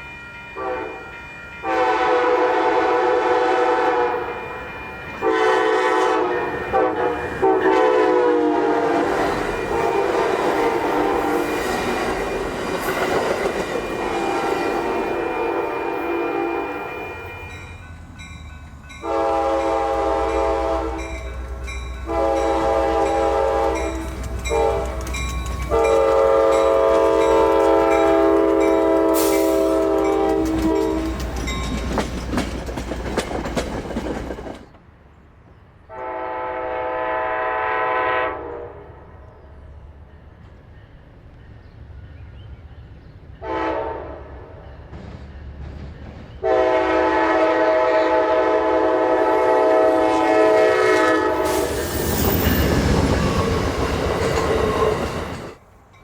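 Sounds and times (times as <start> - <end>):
train rumble: 0.0 - 38.2, 39.5 - 56.0
locomotive air horn blasts: 0.6 - 11.6, 14.0 - 17.6, 19.0 - 21.3, 22.0 - 25.1, 25.7 - 31.2, 35.9 - 39.0, 43.4 - 44.4, 46.4 - 52.0
train wheel clicks: 23.7 - 34.8.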